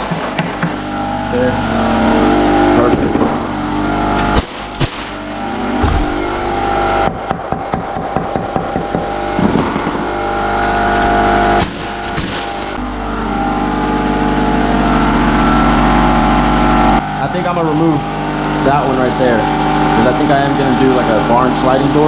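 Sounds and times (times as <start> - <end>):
sharp knocks: 0.0 - 0.8, 5.8 - 6.4, 7.0 - 10.0
motor drone: 0.0 - 22.0.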